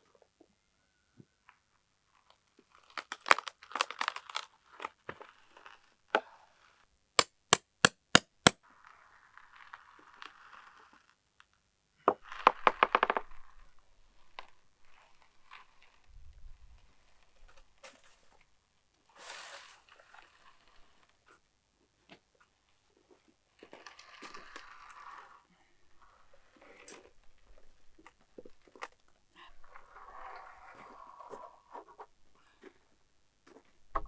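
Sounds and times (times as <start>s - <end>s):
sharp clicks and knocks: 7.2s - 8.6s.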